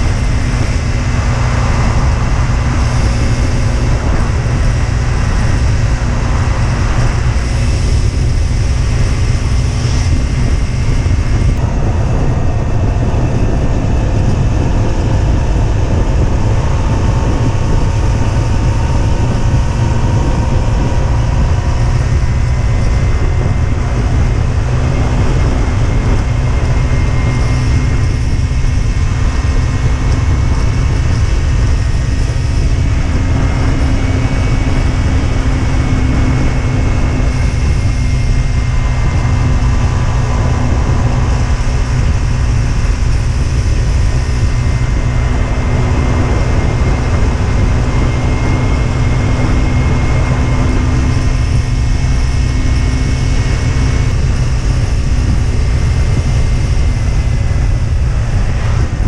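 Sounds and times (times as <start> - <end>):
motorcycle engine running: 0.0 - 59.0
wind rumble on microphone: 0.0 - 59.0.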